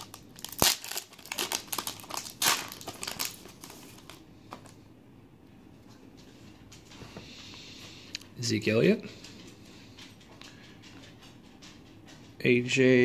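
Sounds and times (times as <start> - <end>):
foil wrapper crinkling: 0.0 - 4.8.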